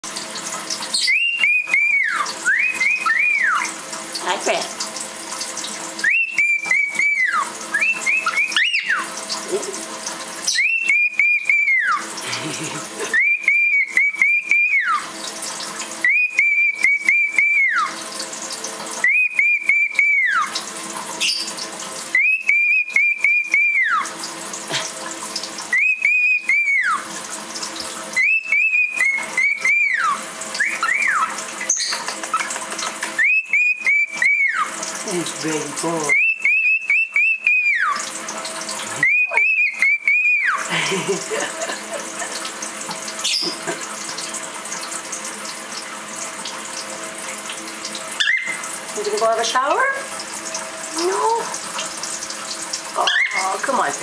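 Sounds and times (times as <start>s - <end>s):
tap running: 0.0s - 54.0s
cockatiel whistling: 0.9s - 3.7s, 6.0s - 9.2s, 10.4s - 12.1s, 13.0s - 15.1s, 16.0s - 18.0s, 19.0s - 20.6s, 21.2s - 24.1s, 25.7s - 27.1s, 28.2s - 34.8s, 36.0s - 38.1s, 38.9s - 40.7s, 43.2s - 43.7s, 48.2s - 48.7s, 53.0s - 53.6s.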